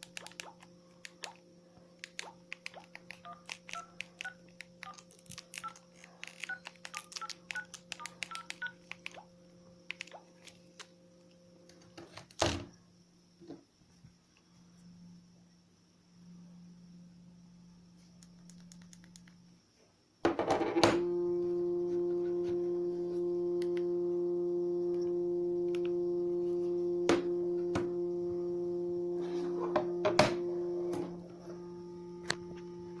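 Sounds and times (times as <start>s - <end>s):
faint low hum: 0.0s - 33.0s
clicks: 21.9s - 23.9s, 24.8s - 26.0s.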